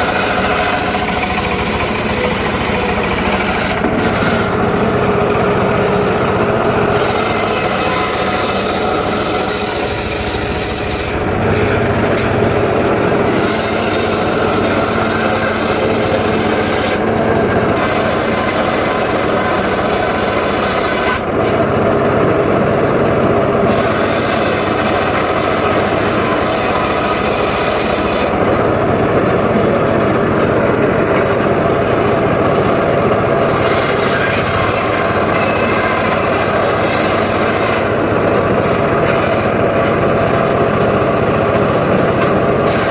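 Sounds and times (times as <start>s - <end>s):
saw blade rasping through wood: 0.0s - 21.6s, 23.7s - 28.4s, 33.4s - 40.0s, 41.5s - 42.9s
saw motor running: 0.0s - 42.9s.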